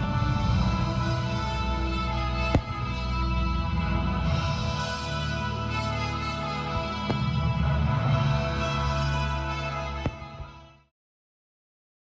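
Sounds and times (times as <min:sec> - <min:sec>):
sustained instrumental music: 0:00.0 - 0:10.9
sharp crack: 0:02.5 - 0:03.0.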